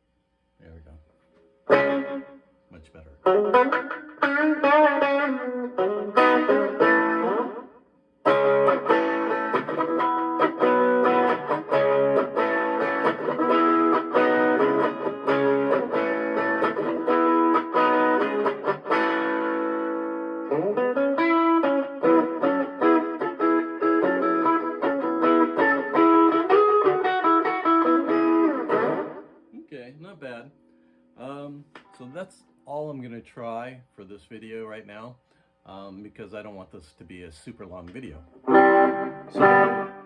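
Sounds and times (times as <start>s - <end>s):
electric guitar riff with reverb: 1.7s - 2.4s, 3.2s - 29.5s, 38.4s - 40.0s.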